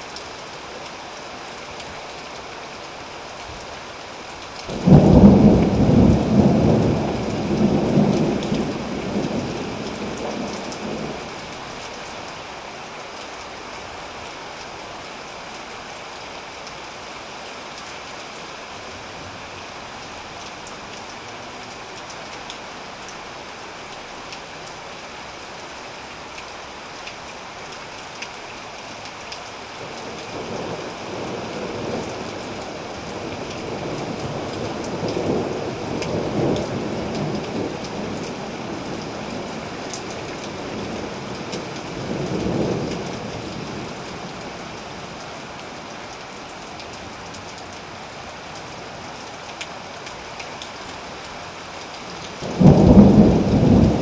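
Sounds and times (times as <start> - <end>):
rain pattering: 0.0 - 54.0
thunder rumbling: 4.7 - 11.2, 52.4 - 54.0.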